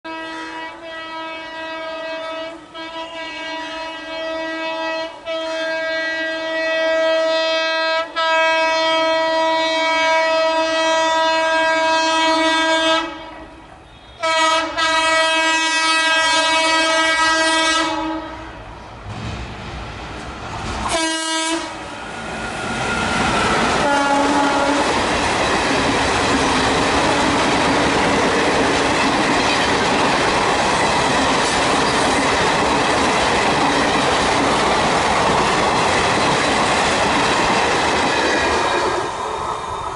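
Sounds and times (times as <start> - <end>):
locomotive horn blasts: 0.1 - 18.6, 20.9 - 21.9, 23.8 - 25.0
train wheels clattering: 22.0 - 39.9.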